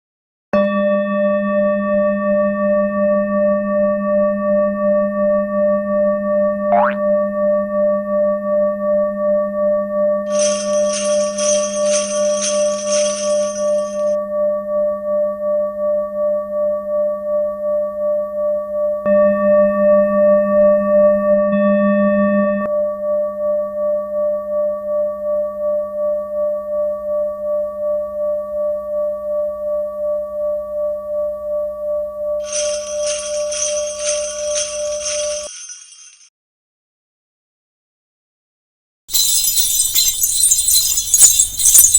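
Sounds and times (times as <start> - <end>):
high rapid jingling shimmer: 10.3 - 14.1, 32.5 - 36.3, 39.1 - 41.9
bell ringing with pulsing waver: 10.3 - 14.2, 32.4 - 36.3, 39.1 - 41.9.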